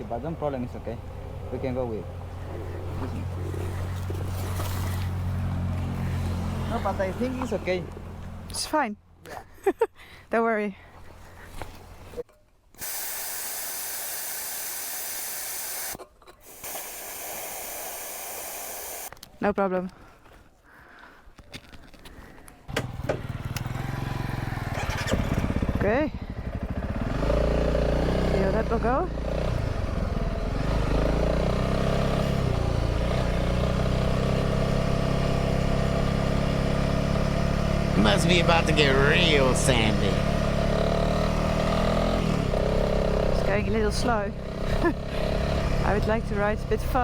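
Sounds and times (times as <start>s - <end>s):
air hissing from tyre valve: 12.8s - 19.1s
motorcycle engine running: 22.8s - 47.0s.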